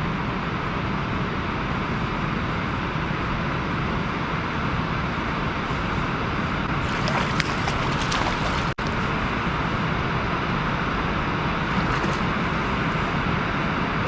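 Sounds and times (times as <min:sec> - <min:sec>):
boat motor running: 0:06.7 - 0:09.1.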